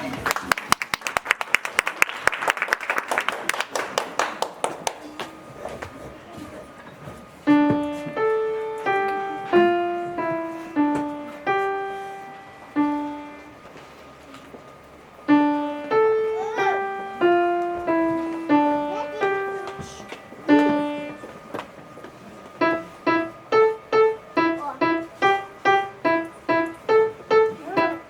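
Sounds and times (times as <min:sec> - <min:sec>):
applause: 0:00.0 - 0:05.3
slow piano melody: 0:06.8 - 0:28.0.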